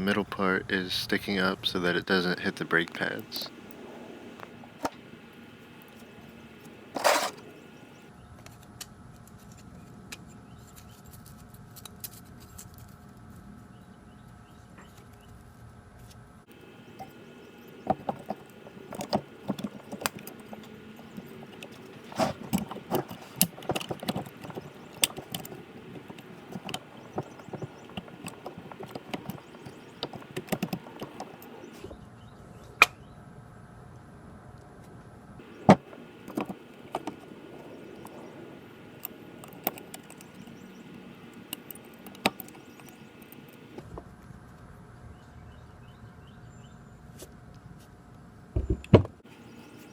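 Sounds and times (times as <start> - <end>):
metal parts clicking and clinking: 5.8 - 7.7, 16.7 - 31.8, 35.6 - 43.8.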